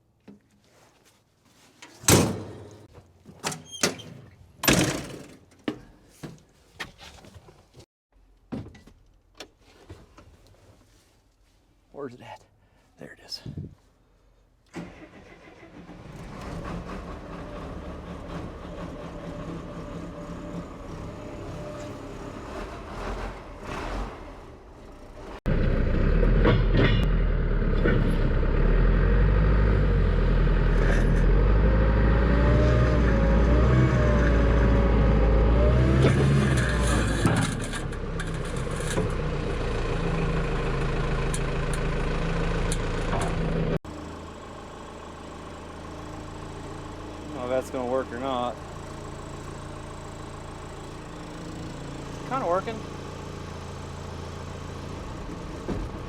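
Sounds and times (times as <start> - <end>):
heavy diesel engine working: 14.9 - 56.0.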